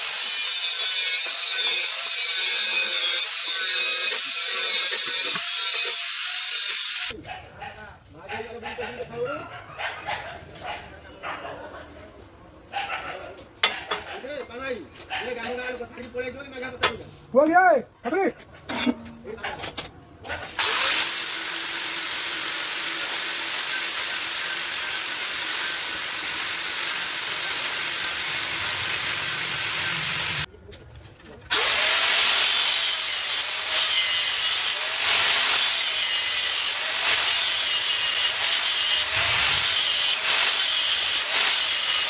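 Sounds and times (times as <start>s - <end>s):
power tool cutting steel: 0.0s - 7.1s, 20.3s - 30.5s, 31.5s - 42.0s.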